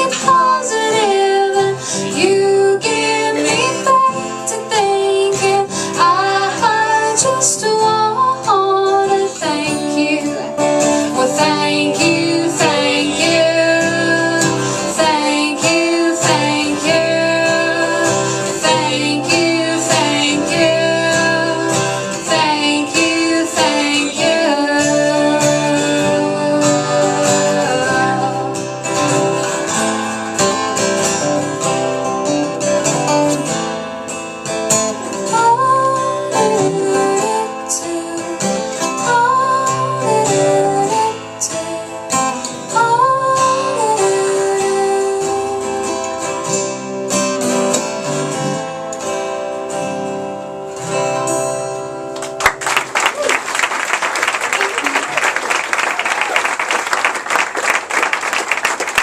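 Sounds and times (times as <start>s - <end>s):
person singing: 0.0s - 29.6s, 35.0s - 46.8s
acoustic guitar: 0.0s - 59.0s.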